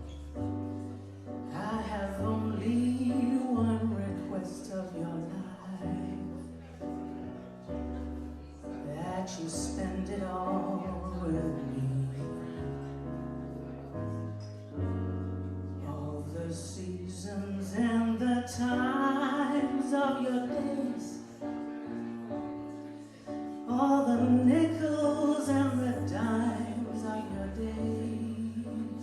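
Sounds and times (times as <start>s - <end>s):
person singing ballad: 0.0s - 7.2s, 8.7s - 13.8s, 14.4s - 29.0s.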